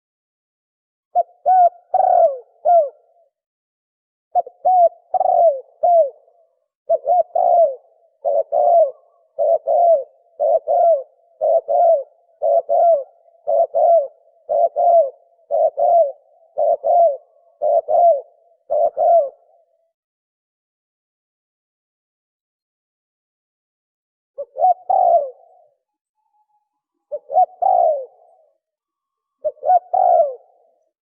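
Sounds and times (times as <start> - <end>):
dove cooing: 1.1 - 3.3, 4.4 - 19.9, 24.4 - 25.9, 27.0 - 28.6, 29.4 - 31.0.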